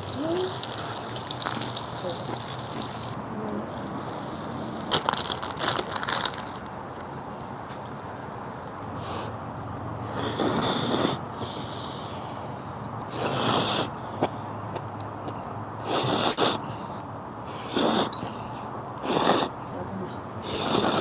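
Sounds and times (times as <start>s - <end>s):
person eating noisily: 0.0s - 6.6s, 17.5s - 19.6s, 20.4s - 21.0s.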